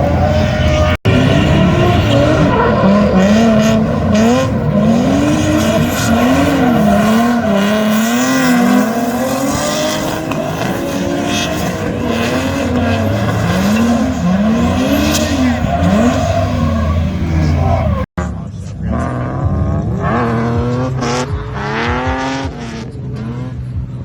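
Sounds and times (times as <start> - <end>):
tyres squealing: 0.0 - 18.1
car engine revving: 0.0 - 24.0.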